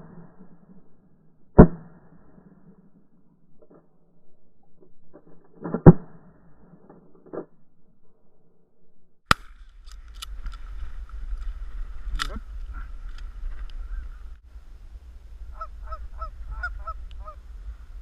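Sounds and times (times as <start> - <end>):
wind rumbling on microphone: 9.7 - 18.0.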